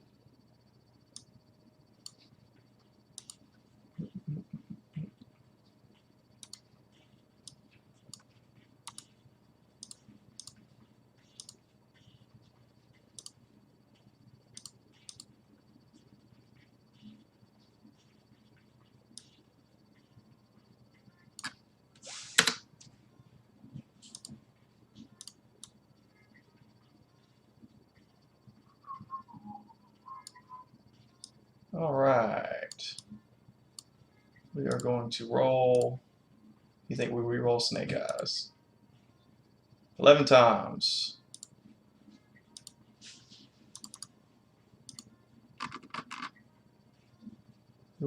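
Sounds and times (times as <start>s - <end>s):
keyboard and mouse clicks: 3.2s - 3.4s, 6.4s - 6.7s, 7.4s - 9.2s, 9.8s - 10.6s, 11.2s - 12.2s, 13.0s - 13.4s, 14.5s - 15.3s, 19.1s - 19.4s, 21.4s - 21.6s, 24.0s - 24.4s, 34.6s - 34.9s, 41.3s - 41.6s, 43.7s - 44.1s, 44.9s - 46.4s.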